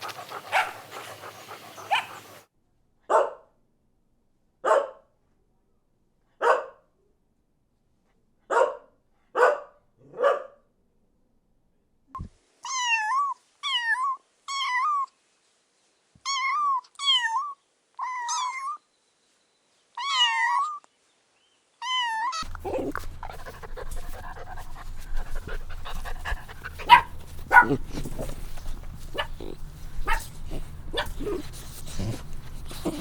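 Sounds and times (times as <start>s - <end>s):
puppy barking: 0.0s - 2.4s, 3.1s - 3.4s, 4.6s - 5.0s, 6.4s - 6.8s, 8.5s - 10.6s, 22.4s - 33.0s.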